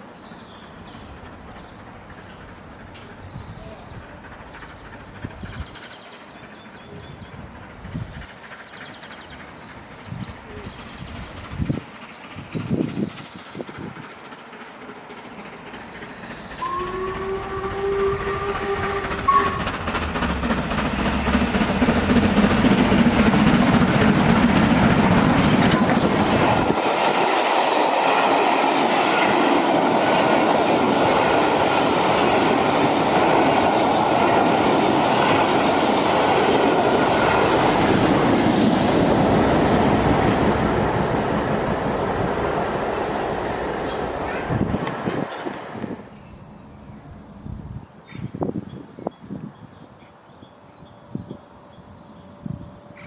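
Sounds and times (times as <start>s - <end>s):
train rumbling and clattering past: 0.0s - 53.0s
steam whistle: 16.6s - 19.8s.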